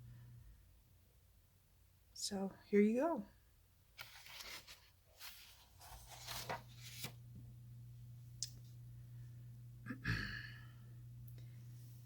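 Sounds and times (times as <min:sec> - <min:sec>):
low steady hum: 0:00.0 - 0:04.5, 0:05.2 - 0:12.0
paper rustling and sliding: 0:04.0 - 0:07.2.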